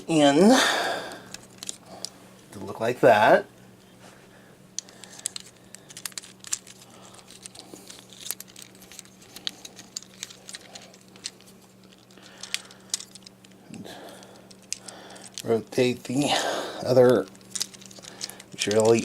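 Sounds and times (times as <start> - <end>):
faint low hum: 0.0 - 19.0
plastic toy parts clicking: 1.3 - 2.1, 4.8 - 13.6, 14.4 - 15.5, 17.0 - 19.0.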